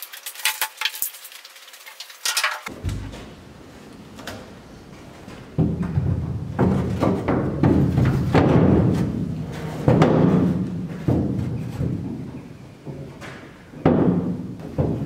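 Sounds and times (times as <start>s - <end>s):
heavy drum hits: 2.7s - 3.5s.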